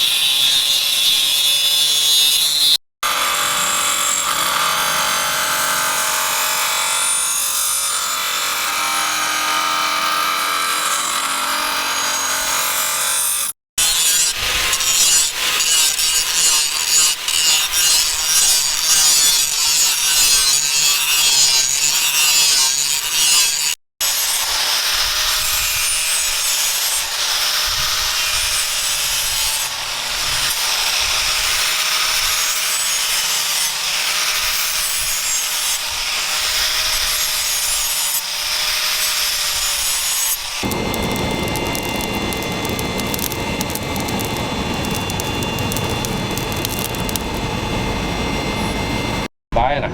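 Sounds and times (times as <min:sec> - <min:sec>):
tool scraping steel: 0:39.0 - 0:47.4
faint wavering whine: 0:40.7 - 0:49.3.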